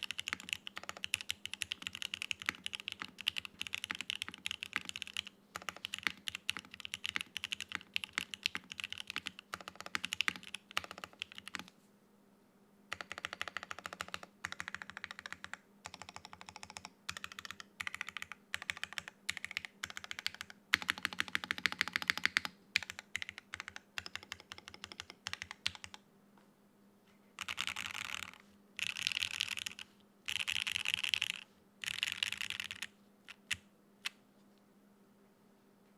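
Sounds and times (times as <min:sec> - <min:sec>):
mechanical keyboard typing: 0:00.0 - 0:11.7, 0:12.9 - 0:26.0, 0:27.4 - 0:34.2.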